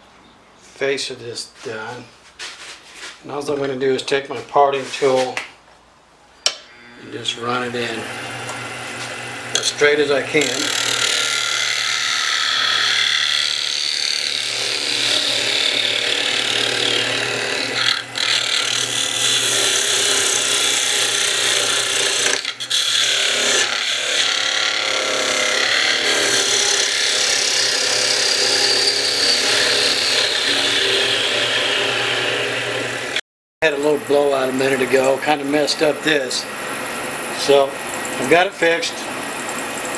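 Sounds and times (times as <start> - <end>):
parting tool scraping wood: 4.4 - 5.4
wood lathe humming: 6.5 - 39.9.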